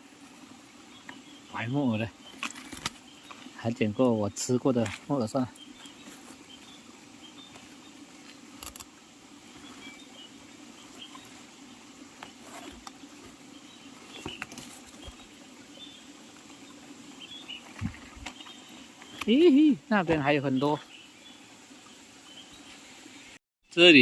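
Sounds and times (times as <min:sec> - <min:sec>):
dry leaves and twigs crackling: 0:02.2 - 0:03.6.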